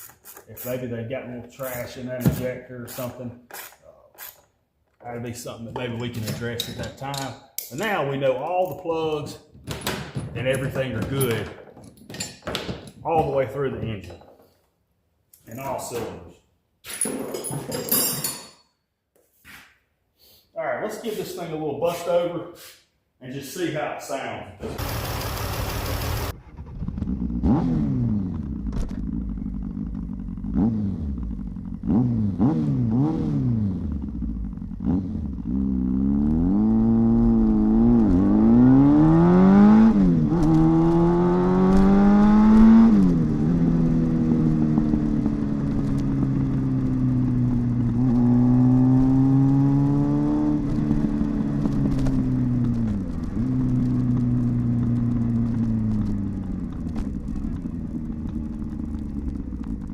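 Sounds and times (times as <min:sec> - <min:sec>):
car engine starting and revving: 0:24.6 - 0:59.9.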